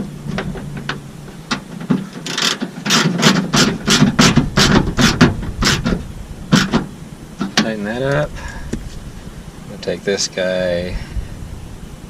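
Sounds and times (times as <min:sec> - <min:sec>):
hand ratchet rasping: 0:02.0 - 0:06.8.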